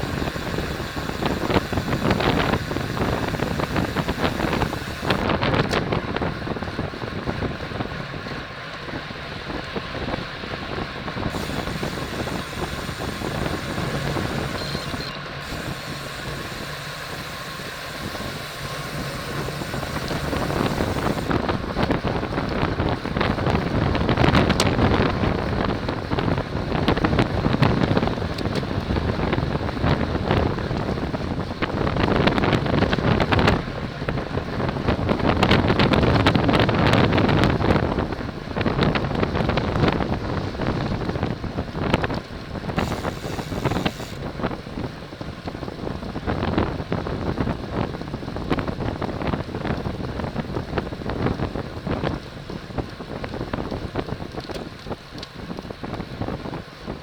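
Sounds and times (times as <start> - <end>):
tyre and road noise: 0.0 - 46.4
wind buffeting microphone: 0.0 - 57.0.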